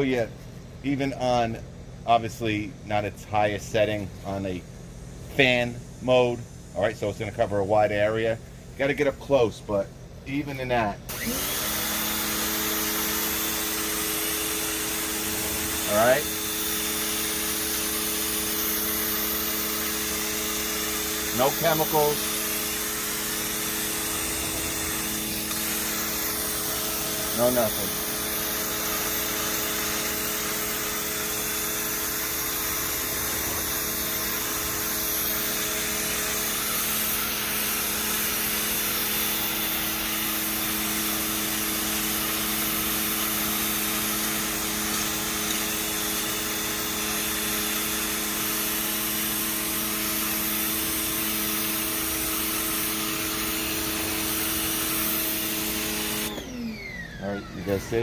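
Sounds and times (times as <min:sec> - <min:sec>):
pressure washer pump humming: 0:00.0 - 0:58.0
water jet hissing onto surface: 0:20.7 - 0:39.4.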